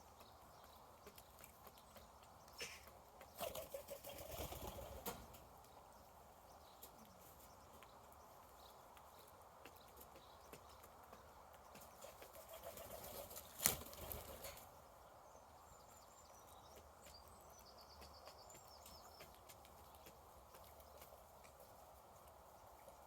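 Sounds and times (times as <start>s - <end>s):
birds pecking at feed: 0.0s - 23.0s.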